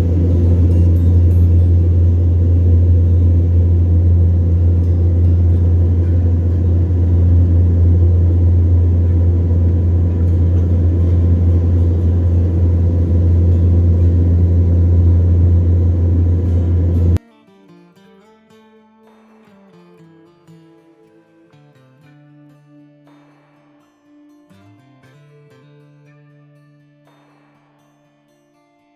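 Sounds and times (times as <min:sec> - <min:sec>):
boat engine droning: 0:00.0 - 0:17.2.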